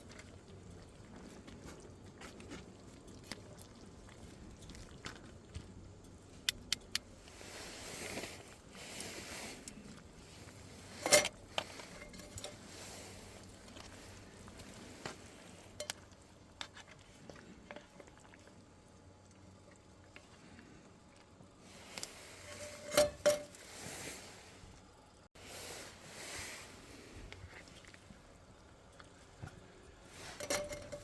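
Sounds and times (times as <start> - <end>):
metal cookware clinking: 11.0 - 12.6, 22.4 - 23.6, 30.2 - 31.0.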